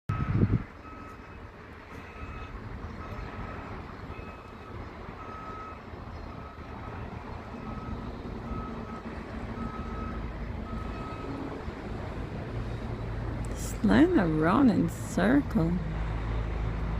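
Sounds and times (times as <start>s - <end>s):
vehicle reversing alarm beeping: 0.1s - 12.0s
low rumble of engines and traffic: 0.1s - 16.9s.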